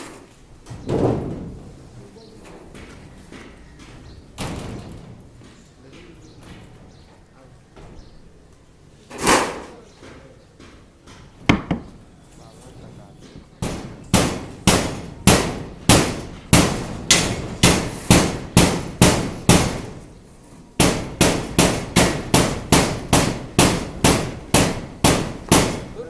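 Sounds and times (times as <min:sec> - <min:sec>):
hammer blows: 0:13.6 - 0:20.1, 0:20.8 - 0:26.0.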